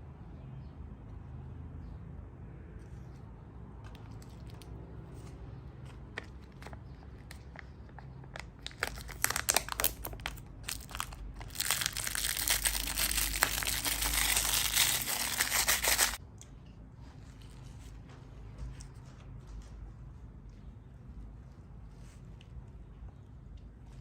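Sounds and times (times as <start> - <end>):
packaging crumpled by hand: 6.2 - 16.2.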